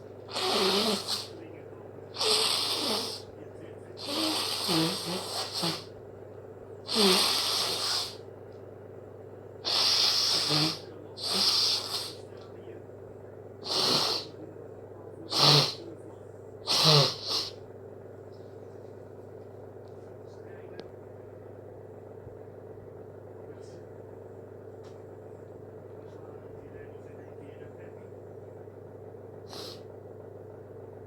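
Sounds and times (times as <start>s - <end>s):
person sneezing: 0.3s - 1.3s, 4.0s - 5.9s, 6.9s - 8.2s, 9.6s - 12.2s, 13.6s - 14.4s, 15.3s - 15.8s, 16.7s - 17.6s, 29.5s - 29.8s.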